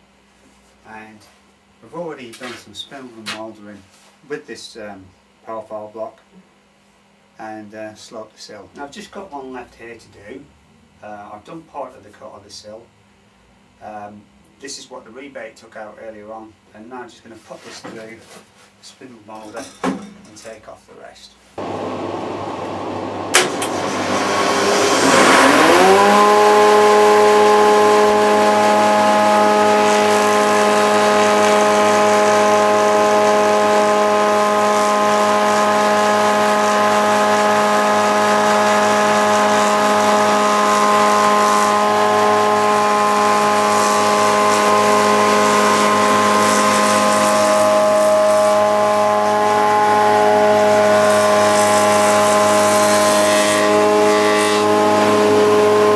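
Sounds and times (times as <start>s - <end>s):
spindle moulder whine: 21.6s - 55.9s.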